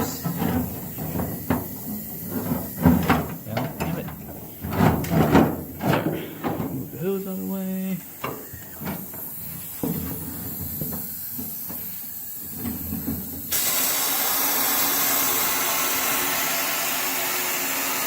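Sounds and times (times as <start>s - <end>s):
sandblaster compressed air hiss: 0.0s - 3.5s, 5.7s - 18.0s
air hose handling knocks: 0.0s - 6.9s, 8.2s - 12.0s.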